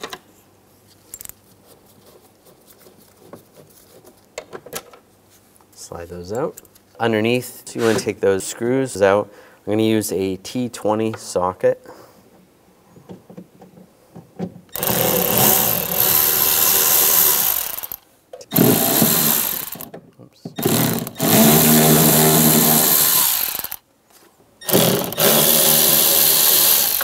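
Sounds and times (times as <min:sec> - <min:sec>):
cordless power driver running: 0:14.8 - 0:19.9, 0:20.6 - 0:23.8, 0:24.7 - 0:27.0.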